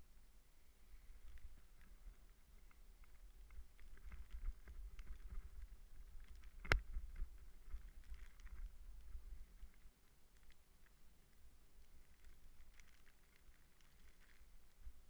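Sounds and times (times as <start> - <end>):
wind rumbling on microphone: 0.9 - 9.9.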